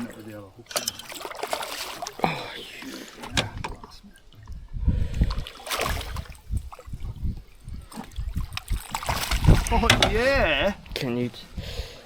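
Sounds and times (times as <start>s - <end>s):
water lapping against boat hull: 0.0s - 11.1s
low knocks: 9.4s - 10.3s.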